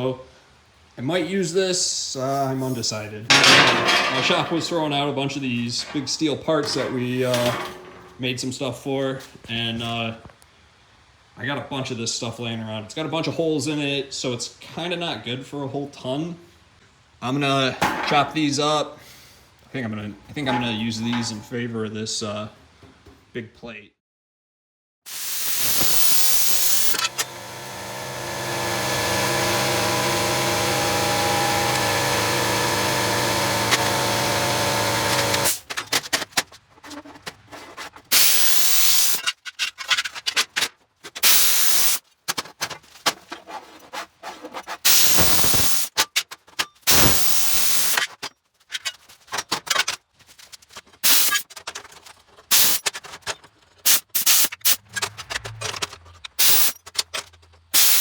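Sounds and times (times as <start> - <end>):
chop saw cutting steel: 3.3 - 5.0, 5.6 - 8.1, 25.1 - 35.7, 38.1 - 39.2, 41.2 - 42.0, 44.9 - 46.0, 46.9 - 48.0, 51.0 - 51.4, 52.5 - 52.8, 56.4 - 56.8, 57.8 - 58.0
sharp hissing bursts: 25.1 - 27.2, 44.9 - 45.9, 57.8 - 58.0.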